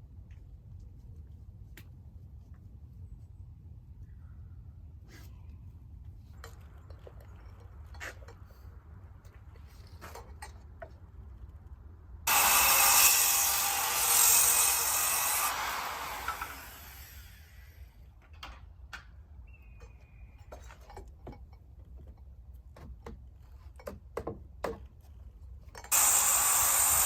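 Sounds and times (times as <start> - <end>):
power saw cutting wood: 12.3 - 17.7, 25.9 - 27.0.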